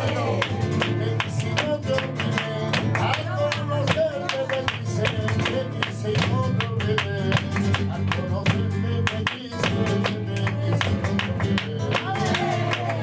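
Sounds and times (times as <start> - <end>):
flamenco guitar playing: 0.0 - 13.0
person singing: 11.5 - 13.0.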